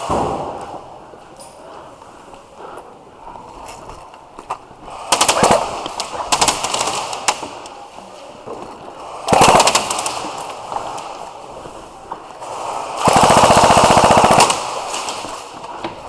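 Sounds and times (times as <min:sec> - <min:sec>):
airsoft gun bursts: 0:05.0 - 0:07.6, 0:09.0 - 0:10.7, 0:12.4 - 0:15.5.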